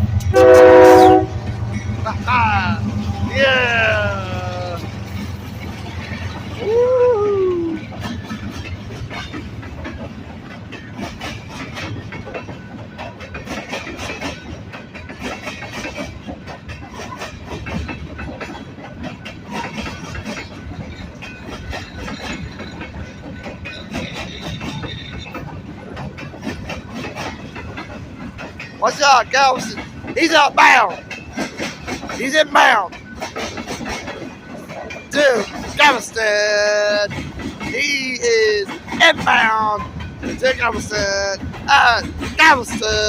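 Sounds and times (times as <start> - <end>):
train wheels clicking over rail joints: 0.0 - 43.0
locomotive horn: 0.2 - 1.5.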